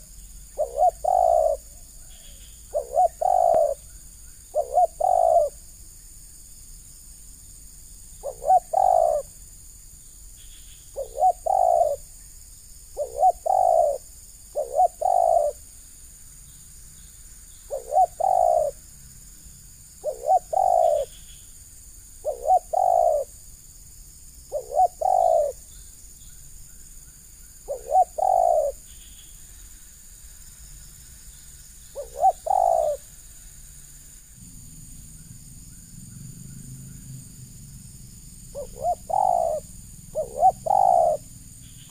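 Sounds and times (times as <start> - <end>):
dove cooing: 0.0 - 5.6, 8.2 - 9.4, 10.9 - 12.1, 12.9 - 15.6, 17.7 - 18.8, 20.0 - 21.2, 22.2 - 23.4, 24.5 - 25.7, 27.7 - 28.9, 31.9 - 33.1, 34.4 - 41.9.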